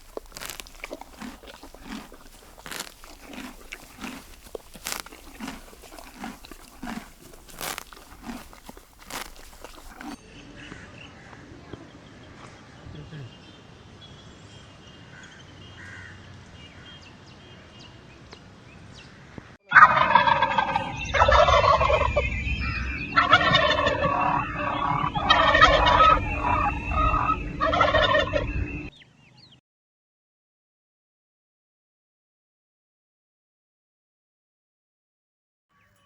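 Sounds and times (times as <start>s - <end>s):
faint outdoor background: 0.0s - 29.6s
turkeys gobbling: 19.7s - 22.2s, 23.1s - 28.5s.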